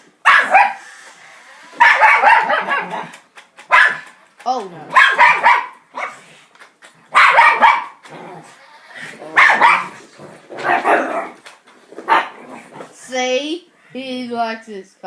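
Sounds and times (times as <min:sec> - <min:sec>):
dog barking: 0:00.2 - 0:00.8, 0:01.8 - 0:03.1, 0:03.7 - 0:04.1, 0:04.9 - 0:06.2, 0:07.1 - 0:08.0, 0:09.3 - 0:10.0, 0:10.6 - 0:11.4, 0:12.1 - 0:12.4.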